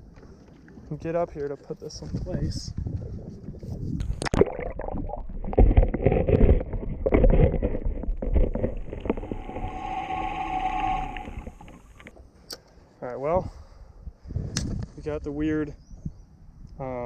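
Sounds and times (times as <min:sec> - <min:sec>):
wind buffeting microphone: 0:02.0 - 0:04.2
steady whine: 0:08.9 - 0:12.1.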